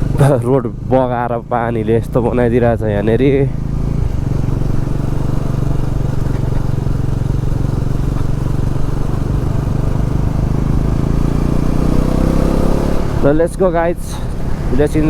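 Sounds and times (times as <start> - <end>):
motorcycle engine running: 0.0 - 15.0
road and wind noise: 0.0 - 15.0.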